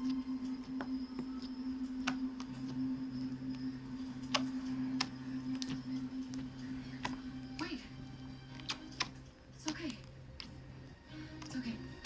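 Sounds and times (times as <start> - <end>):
steady low hum: 0.0 - 12.0
sharp clicks: 8.5 - 10.6.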